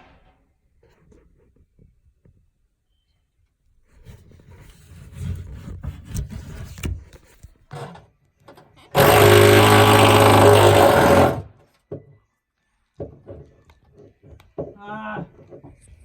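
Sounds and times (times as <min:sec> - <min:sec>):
power tool running: 0:09.0 - 0:11.5.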